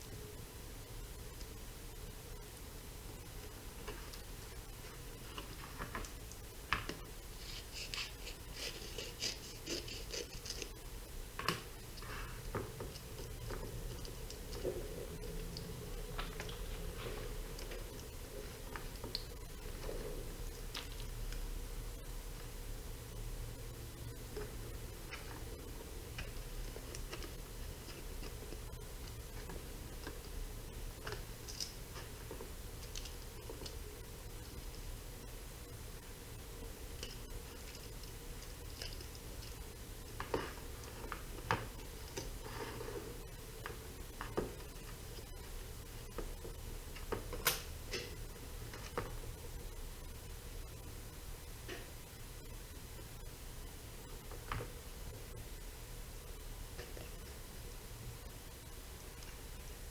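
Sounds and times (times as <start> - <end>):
low steady hum: 0.0 - 59.9
high scratchy strokes on plastic: 7.3 - 10.6.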